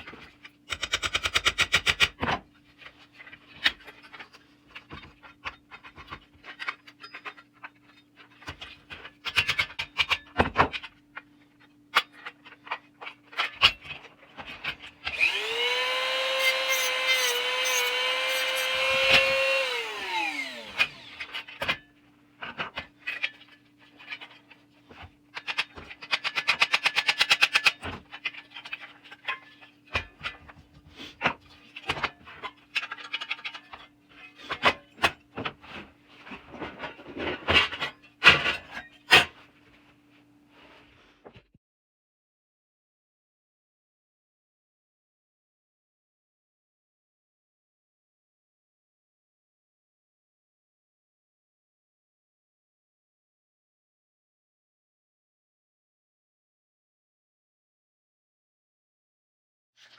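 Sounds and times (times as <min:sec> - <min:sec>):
scraping and clicking by hand: 0:13.5 - 0:21.5
small power tool whining: 0:15.1 - 0:21.5.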